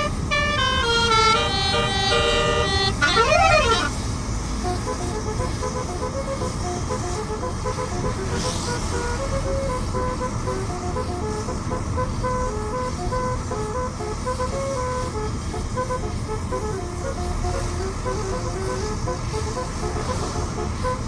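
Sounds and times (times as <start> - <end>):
bus horn playing a tune: 0.0 - 21.0
low vehicle rumble: 0.0 - 21.0.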